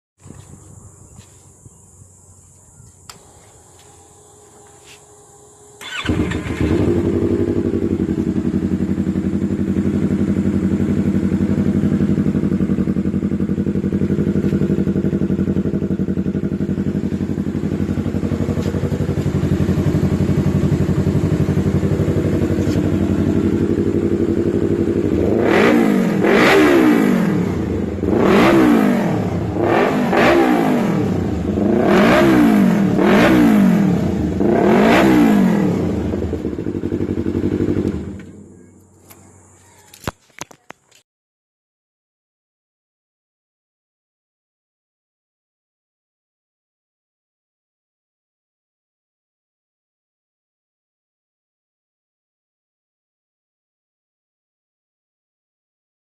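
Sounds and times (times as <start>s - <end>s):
motorcycle engine idling and revving: 0.2s - 40.8s.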